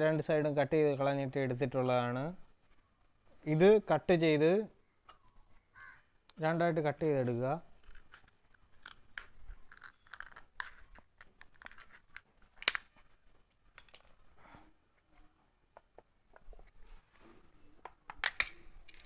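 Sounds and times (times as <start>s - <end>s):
metal crinkling and scraping: 7.2s - 14.4s.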